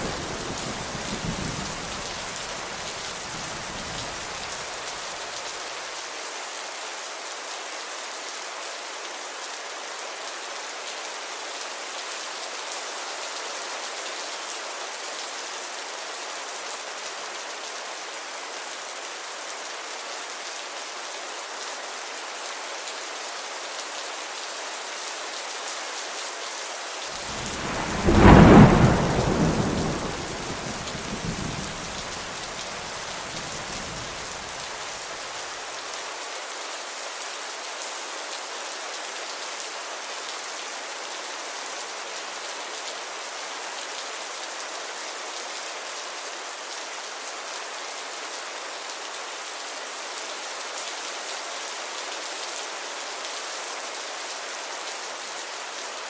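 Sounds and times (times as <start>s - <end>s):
thunder rumbling: 0.0s - 2.7s, 27.2s - 34.6s
steady rainfall: 0.0s - 56.0s
loud thunder clap: 27.2s - 34.4s.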